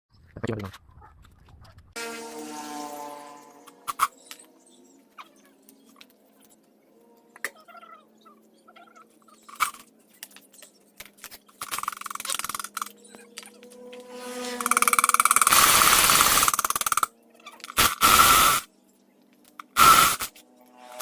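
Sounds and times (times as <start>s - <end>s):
sharp clicks and knocks: 14.6s - 17.9s
loud steady hissing noise: 15.4s - 16.7s, 17.7s - 18.7s, 19.7s - 21.0s.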